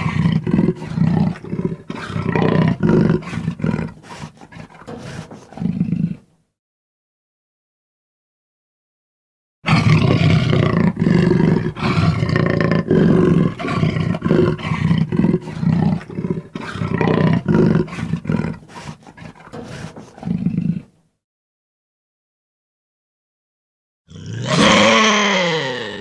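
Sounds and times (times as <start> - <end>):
large animal deep calls: 0.0 - 6.3, 9.7 - 20.9.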